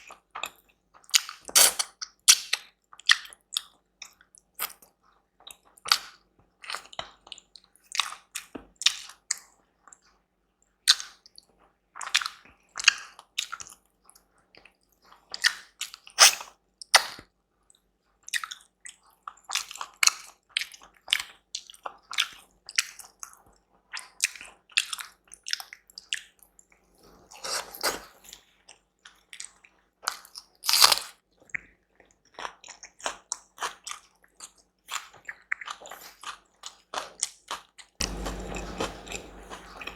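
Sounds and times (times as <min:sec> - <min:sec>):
person chewing food: 0:18.2 - 0:26.3, 0:27.3 - 0:39.9.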